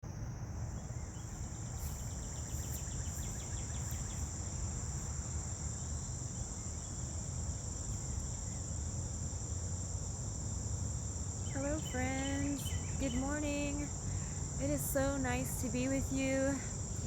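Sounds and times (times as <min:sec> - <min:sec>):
high-pitched insect chorus: 0:00.1 - 0:17.0.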